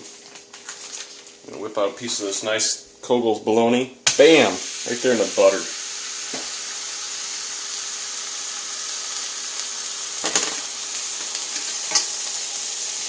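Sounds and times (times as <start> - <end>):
food sizzling in a pan: 4.1 - 13.0.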